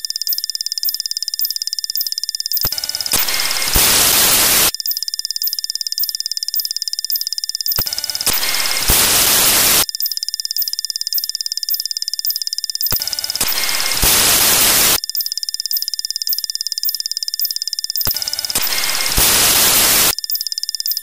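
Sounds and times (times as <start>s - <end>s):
harsh static hiss: 3.1s - 4.7s, 8.0s - 9.8s, 13.1s - 15.0s, 18.1s - 20.1s.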